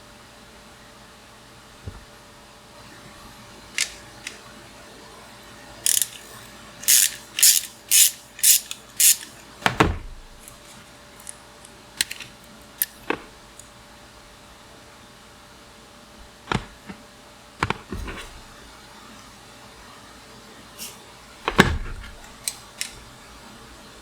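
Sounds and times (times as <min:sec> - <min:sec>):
ratchet rasping bursts: 0:05.8 - 0:09.4
heavy low thud: 0:09.7 - 0:10.4, 0:21.4 - 0:22.2.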